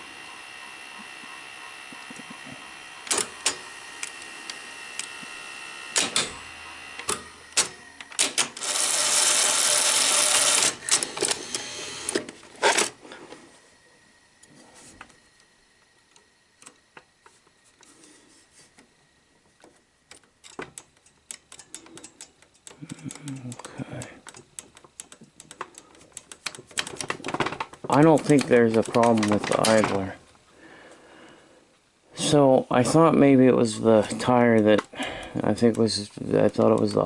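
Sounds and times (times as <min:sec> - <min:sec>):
motor whine: 0:00.0 - 0:19.3
tape mechanism clicking and clunking: 0:00.2 - 0:13.0, 0:16.1 - 0:17.9, 0:19.6 - 0:30.4, 0:32.8 - 0:37.0.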